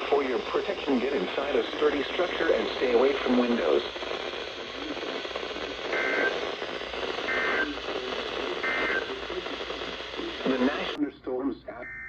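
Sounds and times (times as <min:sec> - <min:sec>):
radio static: 0:00.0 - 0:12.0
two-tone digital data bursts: 0:05.4 - 0:10.9.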